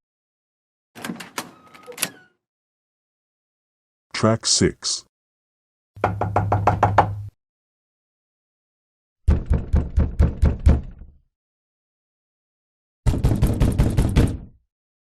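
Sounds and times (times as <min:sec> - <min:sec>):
knocking on a door: 0:06.0 - 0:07.3, 0:09.3 - 0:11.1, 0:13.1 - 0:14.5.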